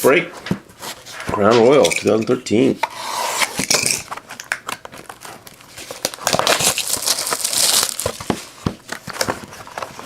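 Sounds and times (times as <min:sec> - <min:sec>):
plastic wrapping crinkling and tearing: 0:03.8 - 0:10.0.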